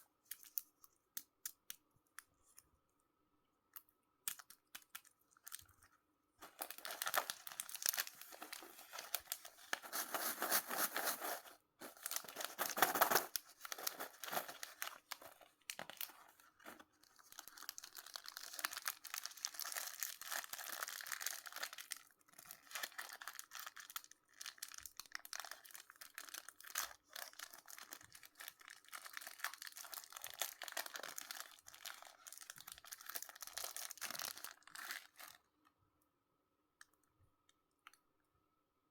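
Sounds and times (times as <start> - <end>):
wrappers crinkling and tearing: 6.4 - 35.4.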